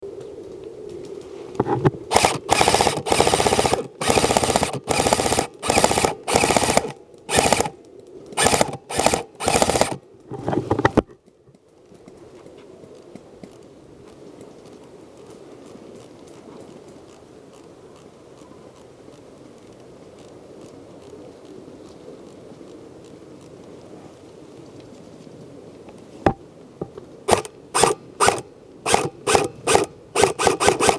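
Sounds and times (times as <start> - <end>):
low outdoor background: 0.0 - 30.9
automatic gunfire bursts: 2.1 - 7.7, 8.4 - 10.0, 27.3 - 30.9.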